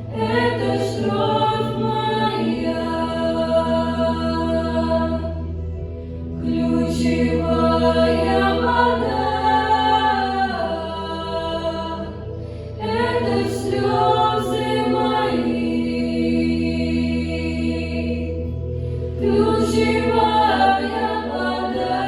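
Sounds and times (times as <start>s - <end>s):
backing track with low drone: 0.0s - 22.0s
children singing in unison: 19.2s - 22.0s.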